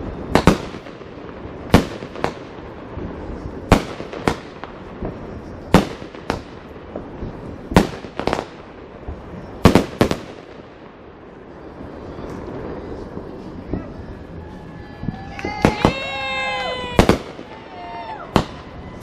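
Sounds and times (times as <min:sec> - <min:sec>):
fireworks bangs: 0:00.0 - 0:19.0
fireworks crackle: 0:00.0 - 0:19.0.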